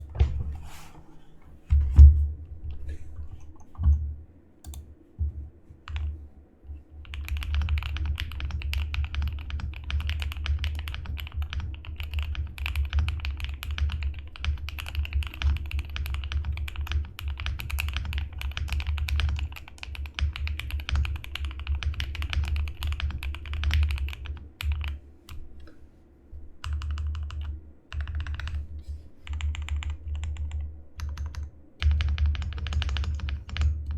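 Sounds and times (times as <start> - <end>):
mechanical keyboard typing: 7.0 - 25.0, 26.6 - 28.6, 29.3 - 33.9.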